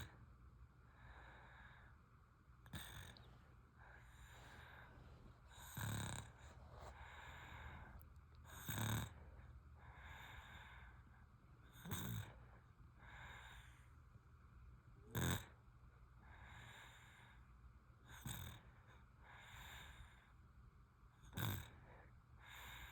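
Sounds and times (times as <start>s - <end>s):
baby breathing softly: 2.8s - 8.2s, 9.4s - 11.3s, 19.2s - 20.4s, 21.8s - 22.9s
baby snoring: 5.5s - 9.3s, 15.1s - 15.6s, 21.3s - 21.8s.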